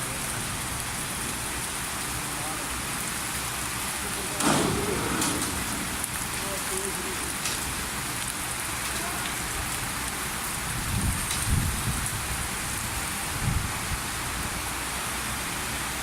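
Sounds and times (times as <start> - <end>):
induction furnace hissing: 0.0 - 10.4
low thumps: 4.4 - 8.7.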